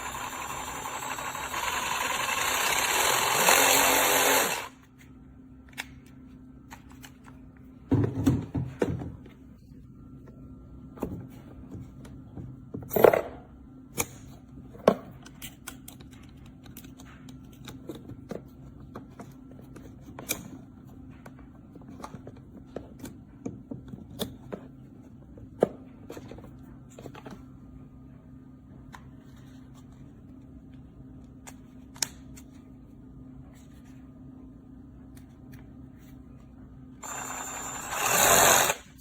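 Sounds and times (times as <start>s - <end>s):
clicks and knocks of objects handled: 14.0s - 27.6s.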